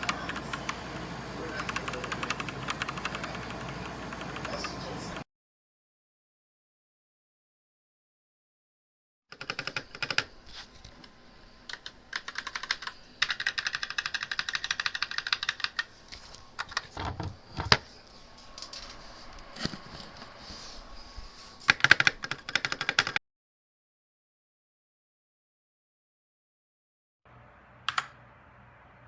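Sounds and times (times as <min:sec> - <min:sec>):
mechanical keyboard typing: 0:00.0 - 0:05.2, 0:09.3 - 0:10.3, 0:11.7 - 0:15.9, 0:21.7 - 0:23.2.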